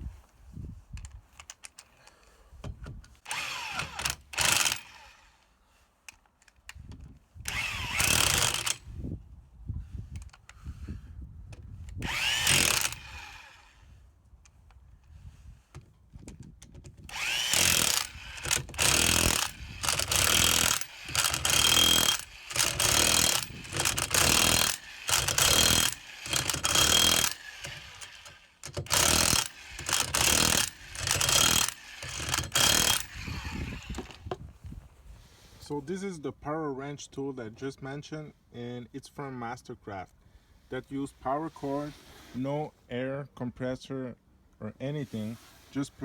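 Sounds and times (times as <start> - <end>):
electric impact wrench bursts: 3.3 - 5.2, 7.5 - 8.8, 12.0 - 13.8, 17.1 - 34.2.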